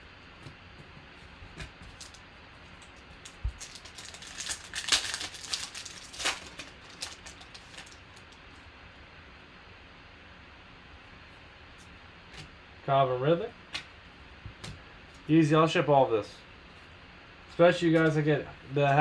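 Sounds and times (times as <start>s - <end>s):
wrapper crinkling: 3.0s - 8.4s.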